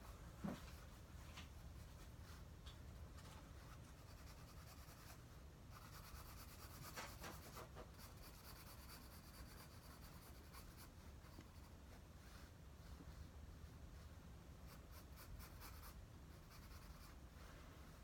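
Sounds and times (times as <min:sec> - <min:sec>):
drawing tool scratching on paper: 0:03.7 - 0:11.8, 0:14.6 - 0:17.2.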